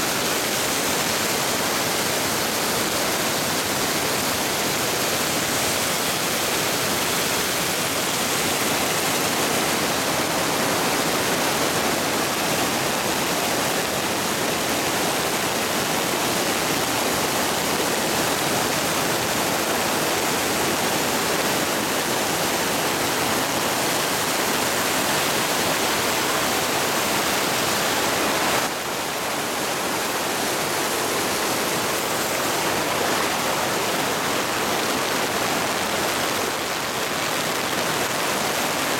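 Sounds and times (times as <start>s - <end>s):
torrential rain and rushing water: 0.0s - 38.9s.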